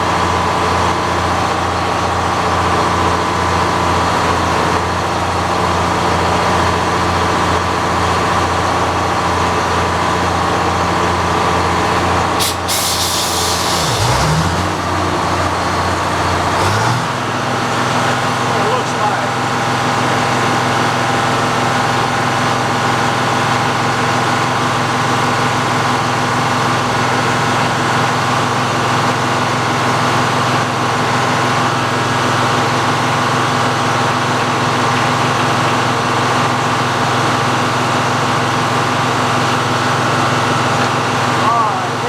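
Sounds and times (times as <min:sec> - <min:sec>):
sawmill engine hum: 0:00.0 - 0:42.0
circular saw blade whining: 0:12.6 - 0:17.5.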